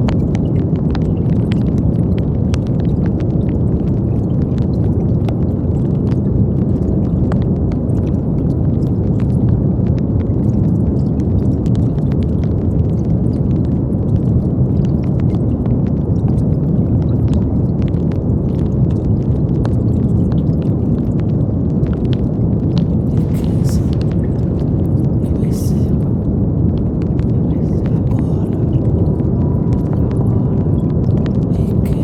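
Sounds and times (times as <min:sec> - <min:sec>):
faint crackles: 0:00.0 - 0:32.0
brown noise rumbling hiss: 0:21.4 - 0:32.0.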